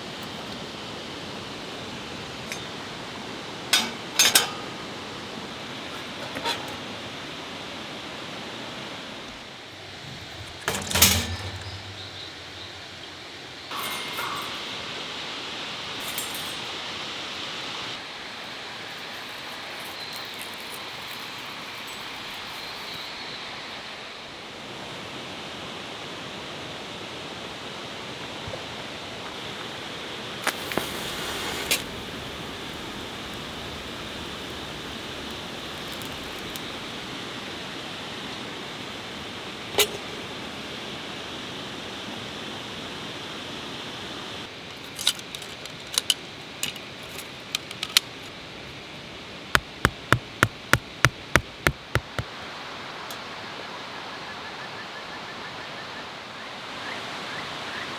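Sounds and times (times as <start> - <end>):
metal camp gear clicking: 3.7 - 5.2, 5.8 - 7.0, 9.8 - 14.8, 16.0 - 16.7, 44.8 - 48.3, 49.6 - 52.3.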